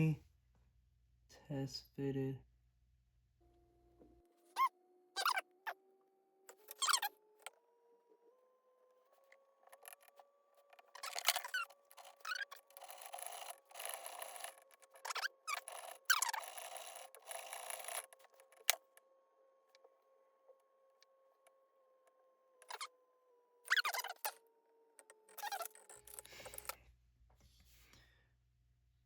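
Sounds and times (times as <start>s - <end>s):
faint motor hum: 3.3s - 28.1s
short squeaks: 4.5s - 5.8s, 6.5s - 7.5s, 9.6s - 19.0s, 22.6s - 22.9s, 23.7s - 24.4s, 25.0s - 26.8s
metal parts scraping: 10.8s - 18.8s, 25.3s - 26.8s.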